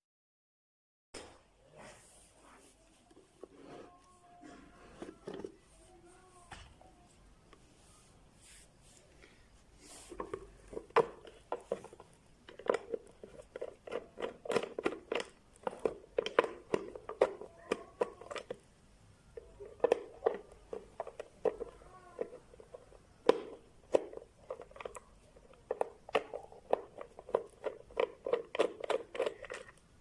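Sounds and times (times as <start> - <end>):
hard parts clicking and knocking: 10.1 - 18.7, 19.4 - 29.8.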